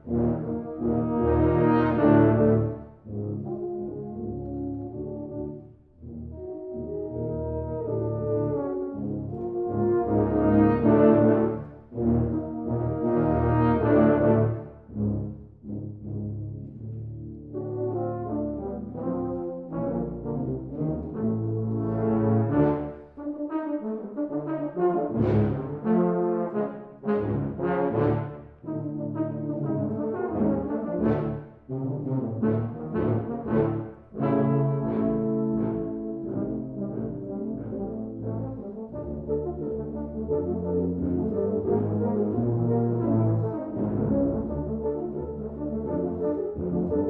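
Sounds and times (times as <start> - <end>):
tuba and euphonium quartet: 0.0 - 47.0.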